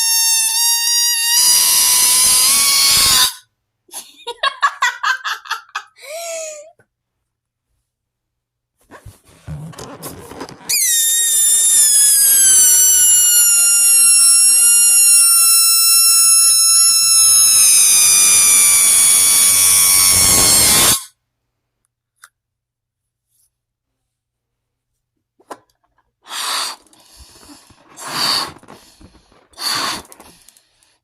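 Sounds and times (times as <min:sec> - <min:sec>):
air squealing out of balloon: 0:00.0 - 0:03.5, 0:09.3 - 0:21.1, 0:26.2 - 0:30.6.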